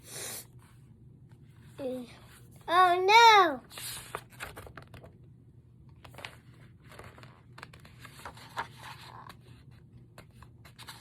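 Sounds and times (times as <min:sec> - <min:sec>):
book pages rustling: 0:03.6 - 0:05.2, 0:05.9 - 0:11.0.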